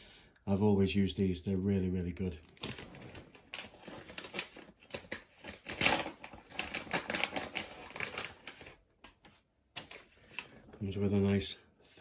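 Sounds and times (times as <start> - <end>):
packaging crinkling and clicking: 2.4 - 10.7.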